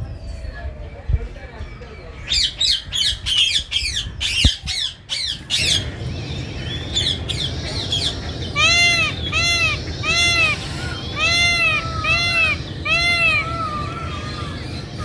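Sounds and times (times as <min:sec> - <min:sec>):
birds harsh chirping calls: 0:01.8 - 0:15.0
bird arching pitched calls: 0:08.5 - 0:14.2.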